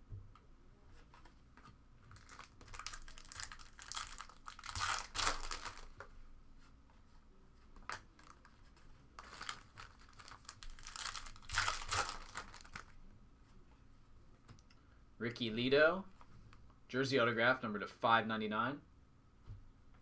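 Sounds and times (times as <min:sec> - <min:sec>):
foil wrappers tearing and crinkling: 0:02.2 - 0:05.9, 0:09.2 - 0:12.9.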